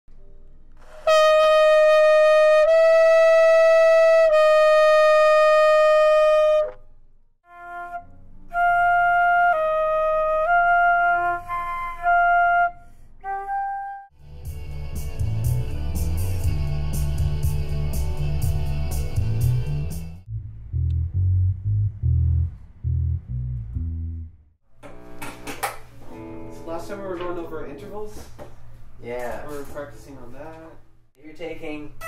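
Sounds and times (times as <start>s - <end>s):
wind instrument long notes: 1.1s - 6.8s, 7.5s - 14.2s.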